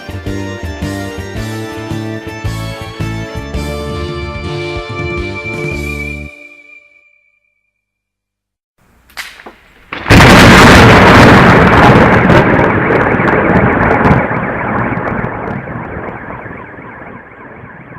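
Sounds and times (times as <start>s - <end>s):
thunder crackles: 9.2s - 17.9s
thunder crash rumbling: 9.4s - 17.9s.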